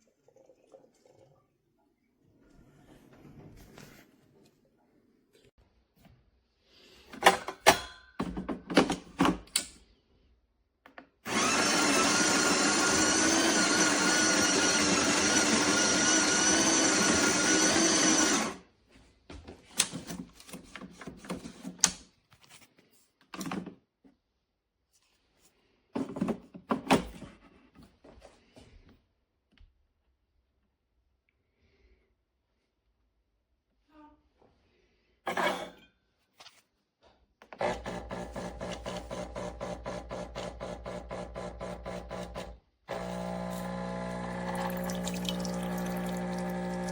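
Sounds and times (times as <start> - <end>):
espresso machine whirring: 11.3 - 18.6, 37.6 - 46.9
grinder grinding coffee beans: 11.3 - 18.6, 37.5 - 46.9.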